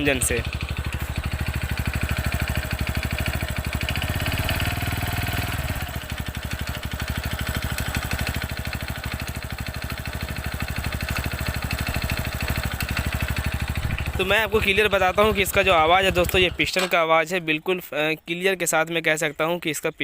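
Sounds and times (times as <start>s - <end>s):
motorcycle engine running: 0.0s - 16.8s
mechanical engine noise: 0.0s - 17.0s.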